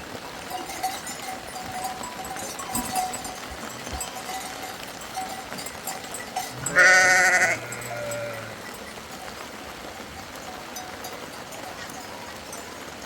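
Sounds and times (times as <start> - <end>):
sheep or goat bleating: 6.5 - 8.6.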